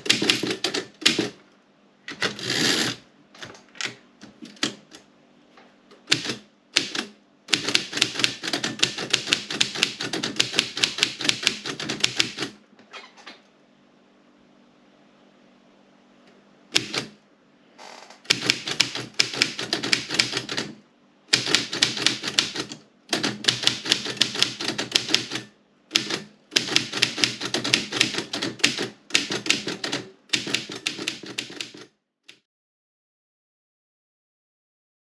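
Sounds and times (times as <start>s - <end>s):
typewriter key strikes: 0.0s - 1.4s, 6.1s - 12.6s, 16.8s - 17.2s, 18.3s - 20.7s, 21.3s - 31.9s
faint hum: 0.0s - 31.8s.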